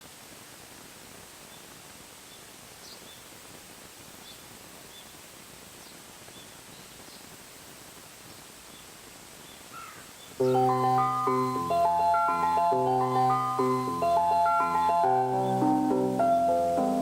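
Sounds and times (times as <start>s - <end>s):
faint outdoor hiss: 0.0s - 17.0s
small bird chirping: 12.2s - 16.8s.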